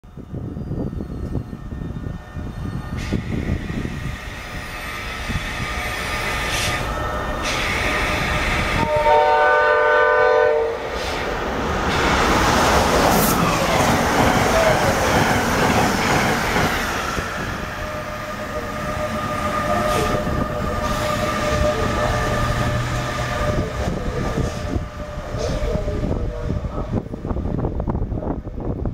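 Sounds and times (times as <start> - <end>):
train coaches rushing past: 2.2 - 27.9
locomotive air horn blast: 5.7 - 11.2.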